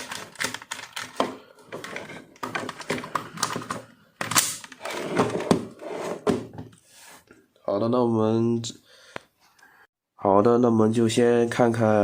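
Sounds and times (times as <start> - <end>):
plastic clatter: 0.0 - 6.6.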